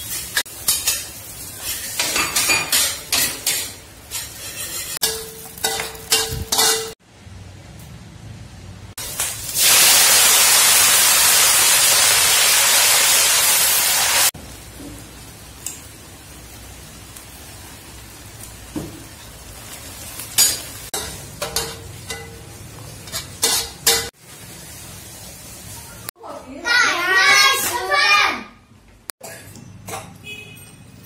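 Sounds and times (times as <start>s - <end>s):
food sizzling in hot oil: 0.0s - 7.0s, 9.0s - 26.2s.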